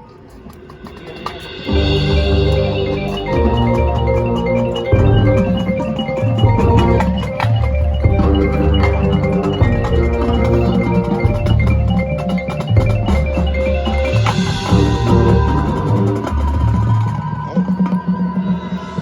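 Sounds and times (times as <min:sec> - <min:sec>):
mallet percussion: 0:00.0 - 0:19.0
marching band playing: 0:00.3 - 0:17.4
drum hits: 0:00.8 - 0:17.3
low bass notes: 0:12.8 - 0:16.8.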